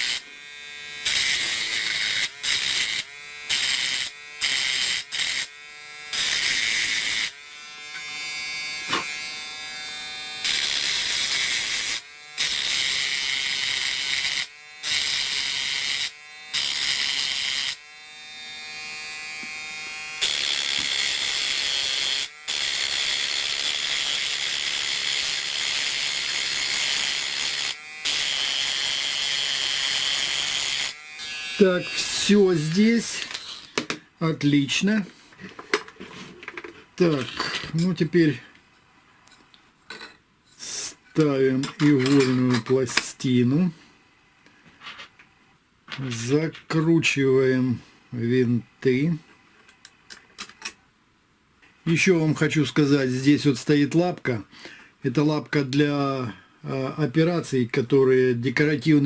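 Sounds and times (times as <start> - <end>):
rotary tool grinding metal: 0.0 - 33.8.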